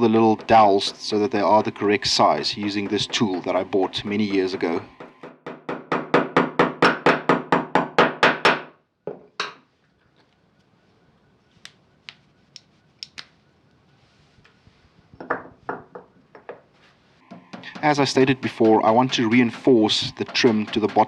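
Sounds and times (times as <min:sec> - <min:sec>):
hammer blows on wood: 0:00.0 - 0:08.6, 0:17.2 - 0:21.0.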